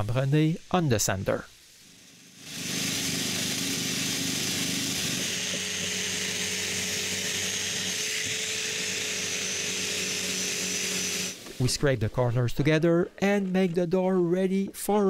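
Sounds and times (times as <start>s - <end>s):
electric sander running: 1.9s - 11.6s.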